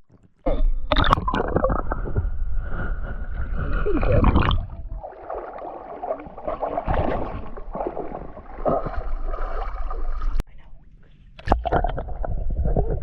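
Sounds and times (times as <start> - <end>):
water sloshing around boat: 3.4 - 11.3.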